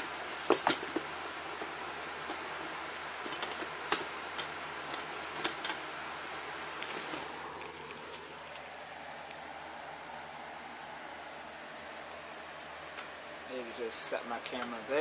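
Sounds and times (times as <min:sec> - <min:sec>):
background hiss: 0:00.0 - 0:15.0.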